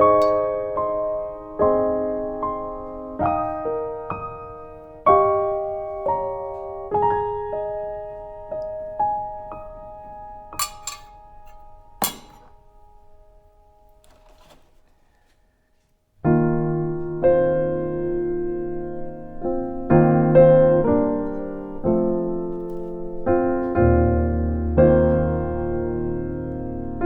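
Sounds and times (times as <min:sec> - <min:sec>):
slow piano chords: 0:00.0 - 0:14.0, 0:16.2 - 0:27.0.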